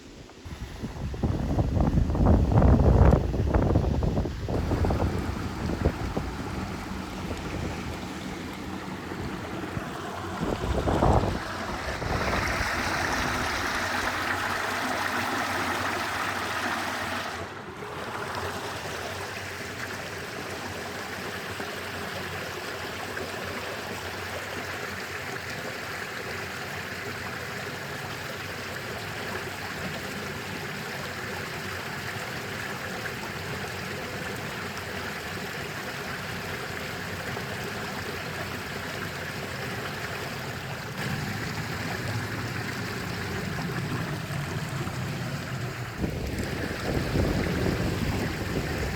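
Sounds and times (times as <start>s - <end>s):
stream water flowing: 0.0s - 48.9s.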